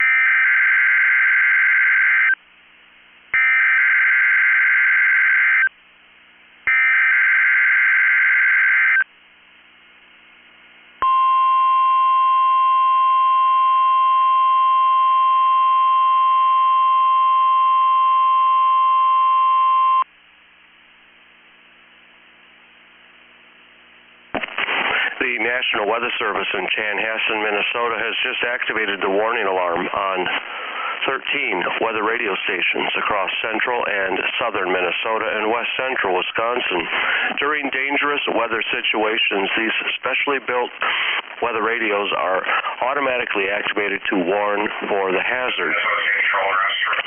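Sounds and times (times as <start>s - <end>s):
steady warning alarm tone: 0.0s - 2.4s, 3.4s - 5.7s, 6.7s - 9.1s
faint radio hiss: 9.1s - 11.0s, 20.1s - 47.0s.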